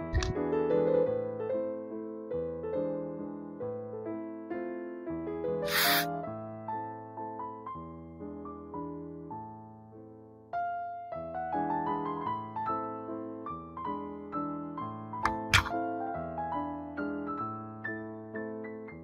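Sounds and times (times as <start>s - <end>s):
piano music: 0.0s - 19.0s
short sharp click: 0.1s - 0.4s, 5.7s - 6.1s, 15.2s - 15.7s.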